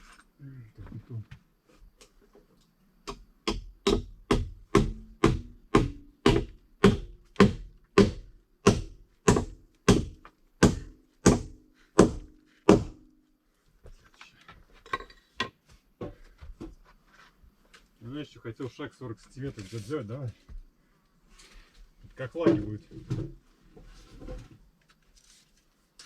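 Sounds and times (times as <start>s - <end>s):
hammer striking with ringing tone: 4.7s - 7.5s.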